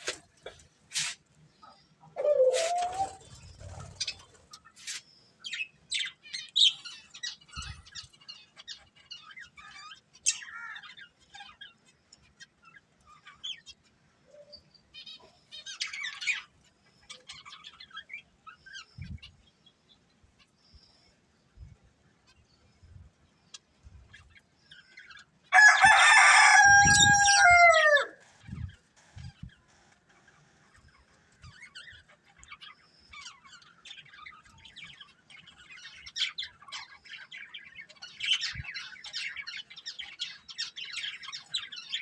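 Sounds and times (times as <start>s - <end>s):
budgerigars chirping: 1.0s - 13.9s.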